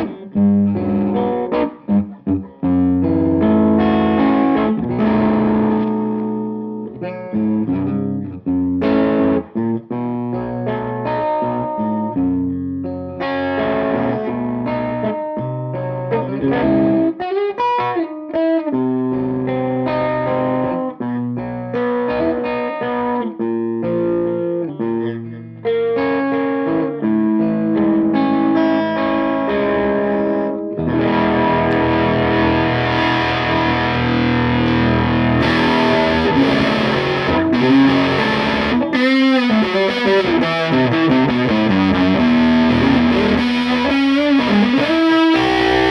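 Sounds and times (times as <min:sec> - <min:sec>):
distorted electric guitar: 0:00.0 - 0:45.9.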